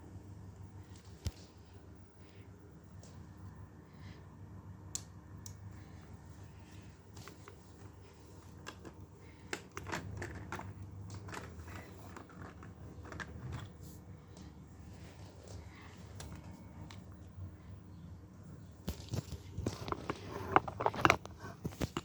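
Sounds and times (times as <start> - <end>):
steady low hum: 0.0 - 22.0
plastic bricks clicking and rattling: 8.7 - 13.7, 19.2 - 22.0.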